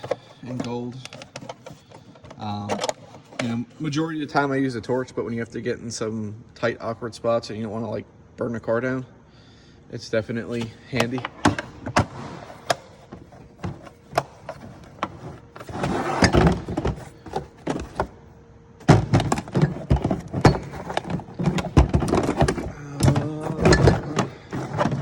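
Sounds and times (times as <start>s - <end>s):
clicks and thunks: 18.8s - 25.0s
tools clattering in metal toolbox: 18.8s - 25.0s.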